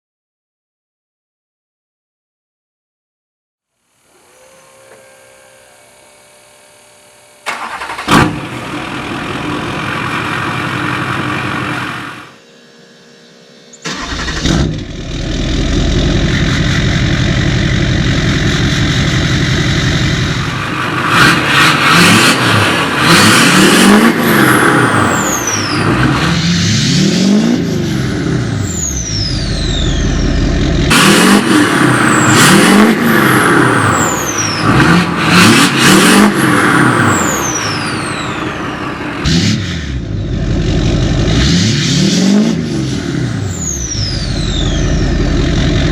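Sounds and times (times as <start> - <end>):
diesel engine starting and idling: 7.4 - 12.4, 13.8 - 45.9
diesel engine revving: 7.5 - 12.4, 13.8 - 45.9
turbo whistle: 28.6 - 32.8, 33.7 - 35.0, 36.9 - 38.8, 43.6 - 45.5.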